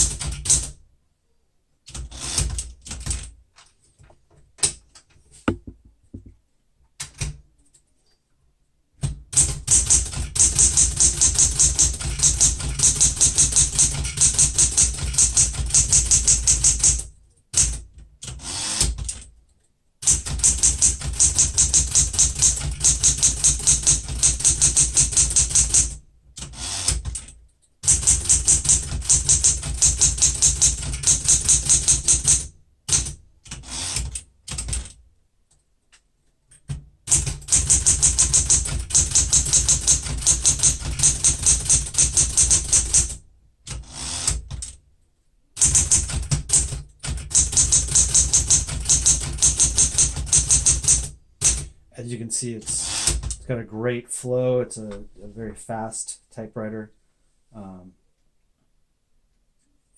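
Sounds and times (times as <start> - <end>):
manual typewriter typing: 0.0 - 0.8, 1.9 - 3.7, 9.0 - 19.3, 20.0 - 35.0, 36.5 - 44.8, 45.6 - 51.7, 52.6 - 53.4.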